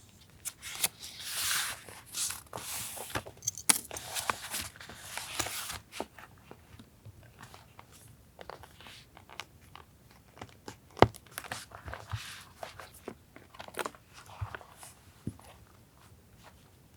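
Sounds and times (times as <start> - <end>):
paper rustling and crinkling: 0.4 - 6.2.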